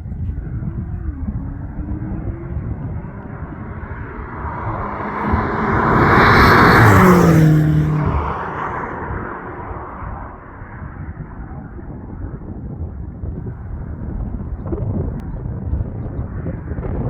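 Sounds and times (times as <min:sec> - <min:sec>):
car engine driving past: 0:00.5 - 0:10.8.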